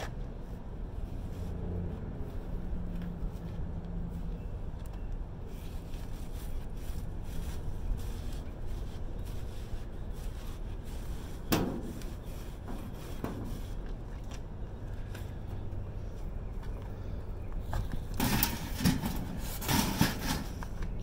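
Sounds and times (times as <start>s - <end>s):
steady low rumble: 0.0s - 18.5s
debris scraping in dumpster: 18.2s - 20.6s.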